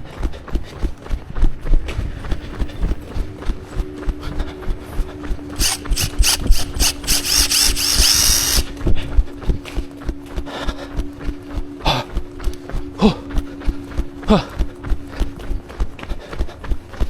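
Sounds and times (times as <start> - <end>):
steady hum: 2.0 - 16.1
mechanical whirring: 5.6 - 8.8.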